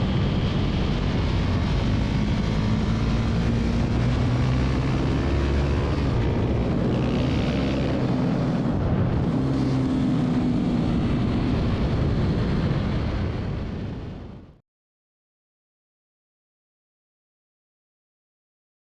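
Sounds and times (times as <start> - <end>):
motorcycle engine running: 0.0 - 13.7.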